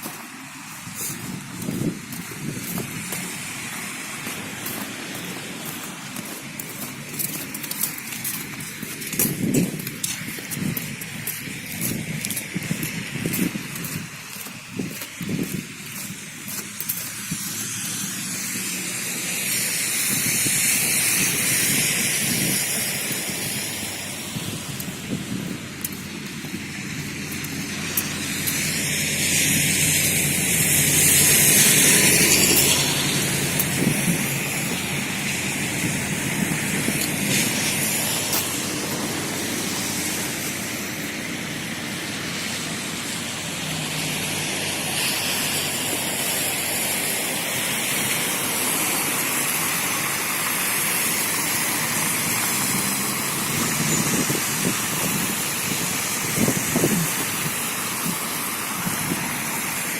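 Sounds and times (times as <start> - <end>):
street traffic hum: 0.0 - 59.9
vehicle passing close: 0.2 - 59.9.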